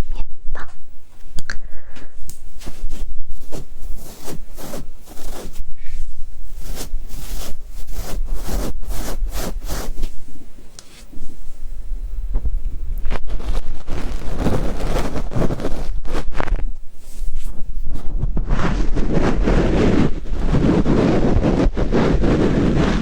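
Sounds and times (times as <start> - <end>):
tools scraping on microphone: 2.6 - 10.2, 13.0 - 23.0.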